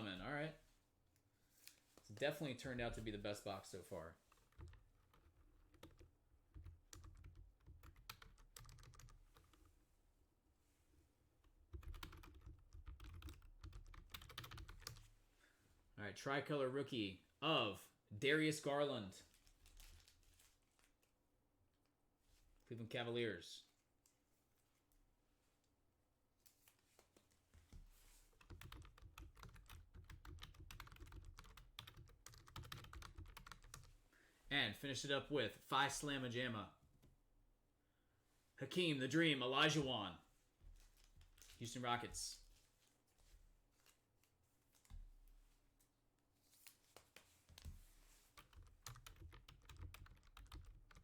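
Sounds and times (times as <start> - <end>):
rapid irregular clicking: 4.2 - 9.7, 11.6 - 15.0, 28.4 - 33.9, 48.3 - 51.0.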